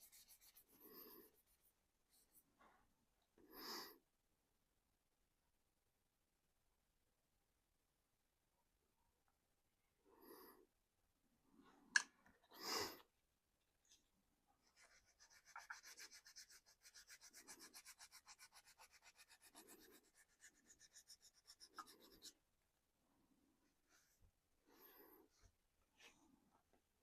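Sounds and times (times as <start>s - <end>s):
brush scrubbing painted surface: 0.0s - 2.4s, 14.6s - 22.4s.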